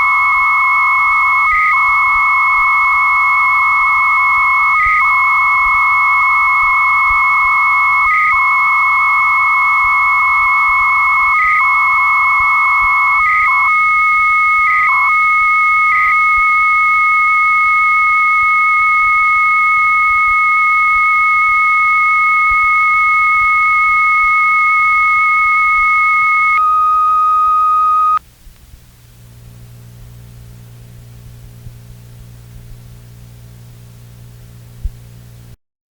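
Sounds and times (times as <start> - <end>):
modem carrier whistles: 0.0 - 28.2
warbling modem data tone: 0.0 - 28.2
low hum and hiss: 0.0 - 35.6.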